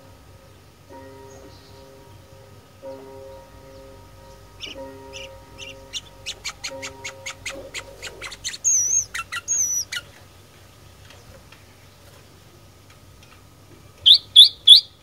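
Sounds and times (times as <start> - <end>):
bird chirping: 2.8 - 11.4, 14.0 - 15.0
wavering high bird whistles: 4.6 - 10.1, 14.0 - 15.0.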